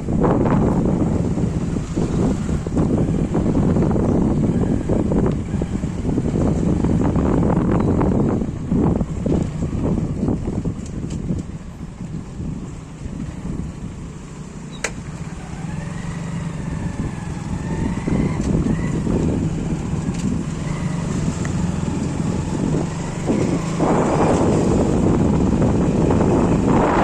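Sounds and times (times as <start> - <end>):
vehicle engine rumbling: 0.0 - 27.0
sharp click: 14.8 - 15.0.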